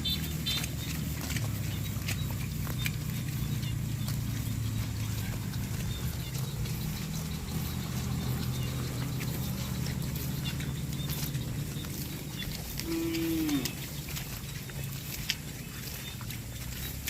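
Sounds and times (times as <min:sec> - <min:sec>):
cattle mooing: 0:03.3 - 0:14.2.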